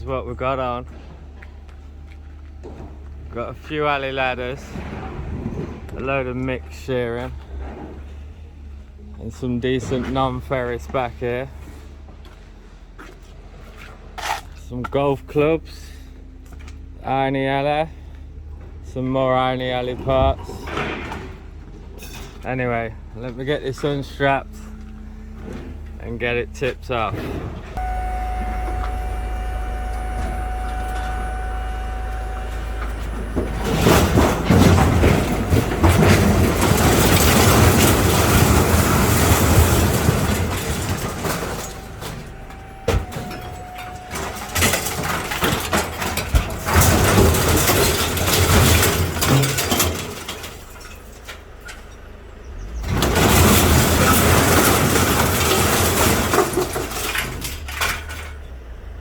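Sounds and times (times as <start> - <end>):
vehicle engine running: 0.0 - 59.0
scrap metal crashing and clattering: 0.5 - 14.6, 19.6 - 26.0, 26.6 - 58.9.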